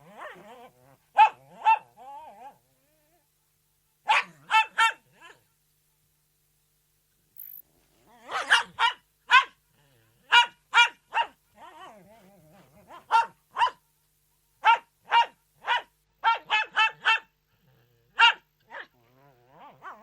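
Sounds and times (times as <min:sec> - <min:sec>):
dog barking sharply: 0:04.1 - 0:05.0, 0:08.3 - 0:09.6, 0:14.6 - 0:17.3.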